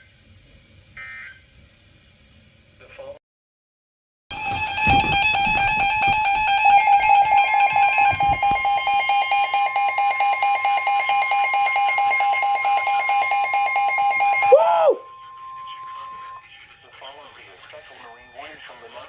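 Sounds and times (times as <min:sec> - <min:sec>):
higher alarm tone: 0:04.3 - 0:16.5
pulsing electronic alarm tone: 0:04.3 - 0:16.6.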